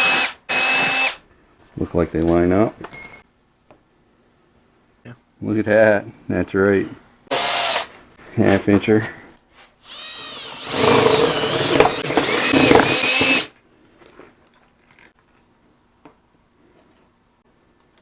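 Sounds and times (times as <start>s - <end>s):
power drill boring through plastic: 0.0s - 1.2s, 7.3s - 7.9s, 9.9s - 13.5s.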